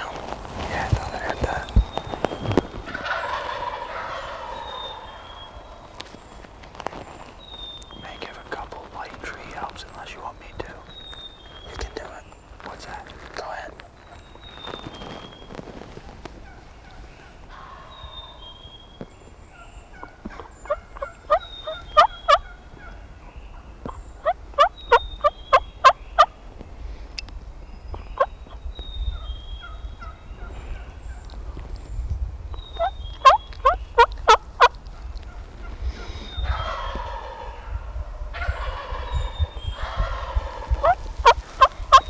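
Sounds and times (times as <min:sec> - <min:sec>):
songbird chirps: 0:00.0 - 0:42.0
turkey call yelps: 0:20.0 - 0:23.0, 0:23.9 - 0:26.4, 0:32.8 - 0:34.8, 0:36.4 - 0:42.0.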